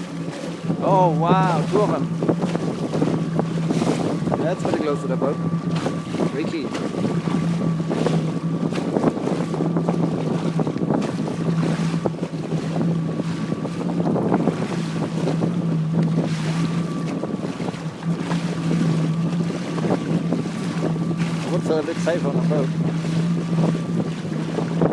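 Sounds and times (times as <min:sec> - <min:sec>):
jet ski engine idling: 0:00.0 - 0:24.9
water lapping: 0:00.0 - 0:24.9
wind buffeting microphone: 0:00.0 - 0:24.9.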